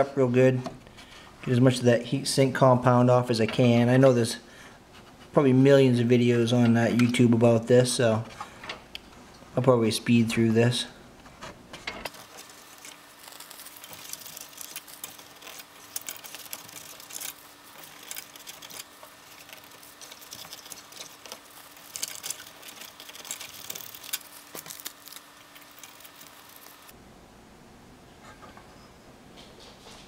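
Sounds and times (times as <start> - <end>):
faint steady hum: 0.0 - 30.0
pad rubbing on heatsink: 12.1 - 26.9.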